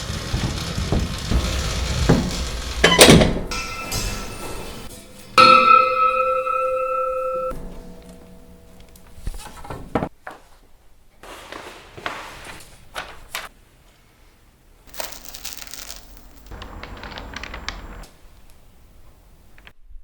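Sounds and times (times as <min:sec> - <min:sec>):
sharp knocks and smacks: 0:00.2 - 0:04.2
paper and tools scraping and rustling: 0:11.2 - 0:13.5, 0:14.9 - 0:18.4.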